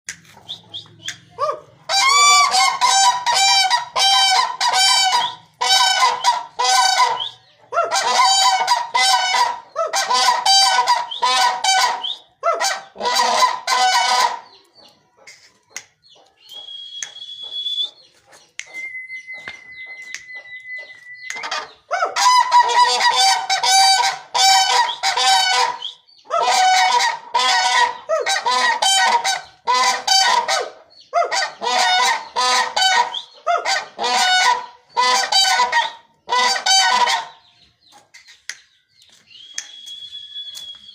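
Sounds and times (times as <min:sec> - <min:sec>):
whistle-like tones: 0:04.9 - 0:05.6, 0:07.0 - 0:07.5, 0:12.0 - 0:12.4, 0:16.4 - 0:21.6, 0:25.7 - 0:26.2, 0:39.2 - 0:40.9.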